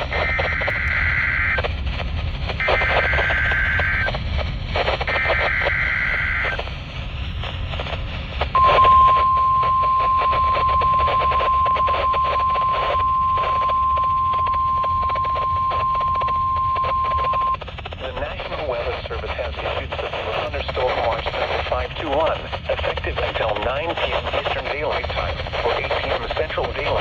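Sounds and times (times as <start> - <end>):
buzzy two-tone digital bursts: 0.0 - 1.6, 2.6 - 4.1, 5.0 - 6.6
steady warning alarm tone: 0.0 - 1.7, 2.6 - 4.1, 5.0 - 6.6, 8.6 - 17.6
radio static: 0.0 - 6.8, 7.4 - 27.0.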